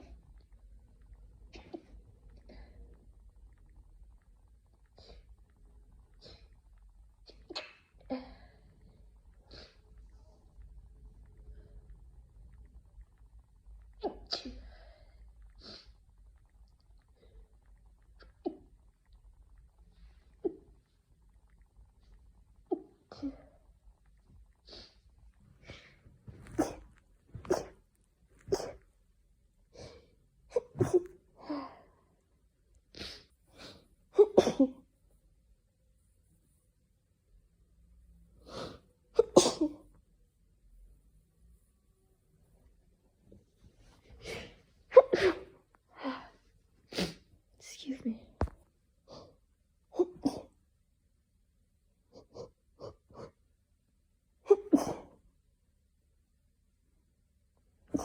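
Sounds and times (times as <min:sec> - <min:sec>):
person sneezing: 0:26.4 - 0:26.8, 0:27.4 - 0:27.8, 0:44.2 - 0:45.5.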